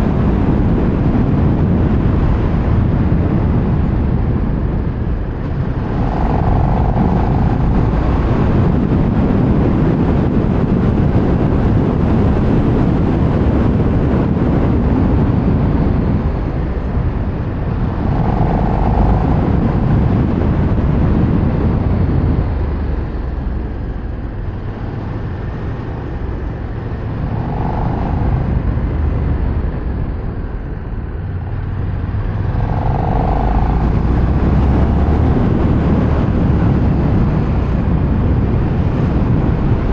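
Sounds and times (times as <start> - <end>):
wind rush on microphone: 0.0 - 39.9.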